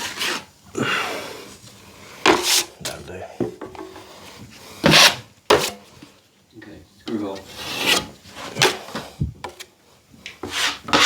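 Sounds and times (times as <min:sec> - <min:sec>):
taping knife scraping drywall: 0:04.9 - 0:05.8, 0:07.5 - 0:08.9, 0:10.4 - 0:11.0.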